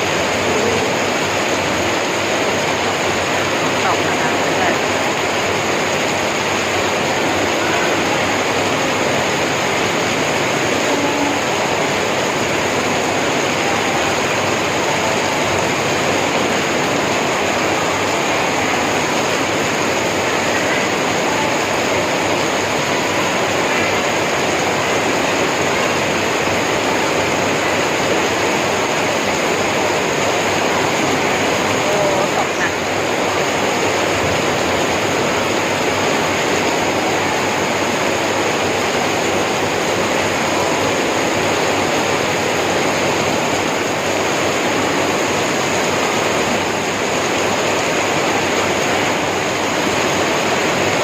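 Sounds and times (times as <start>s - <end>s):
heavy rain pouring: 0.0s - 51.0s.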